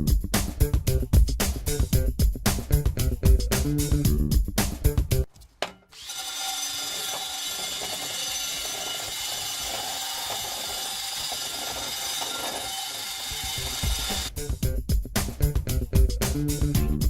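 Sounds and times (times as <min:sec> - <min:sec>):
wire brush scrubbing metal: 0:05.9 - 0:14.3.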